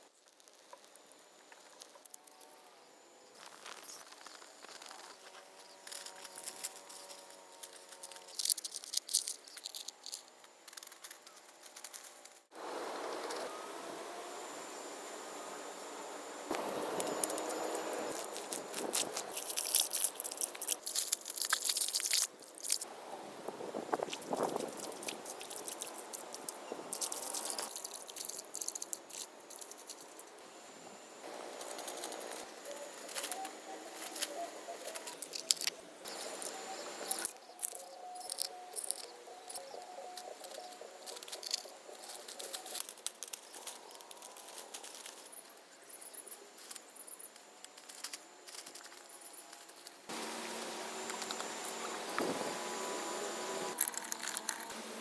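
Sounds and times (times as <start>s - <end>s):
faint pitched chirping: 32.4s - 47.4s.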